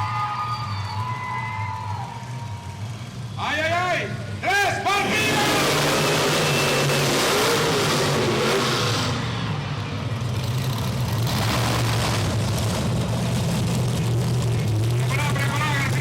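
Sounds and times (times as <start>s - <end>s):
truck engine revving: 2.2s - 16.0s.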